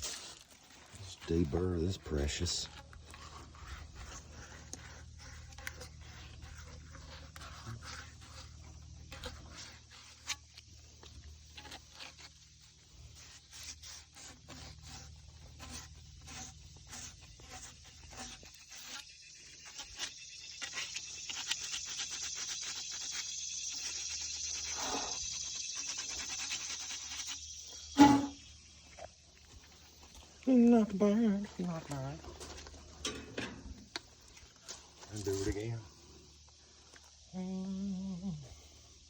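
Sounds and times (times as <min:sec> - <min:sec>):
scraping plastic pipe: 0:00.0 - 0:19.1, 0:25.8 - 0:28.5.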